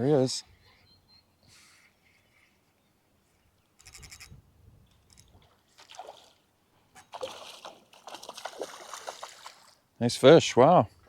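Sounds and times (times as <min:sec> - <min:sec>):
water splashing and sloshing: 0:05.1 - 0:10.0.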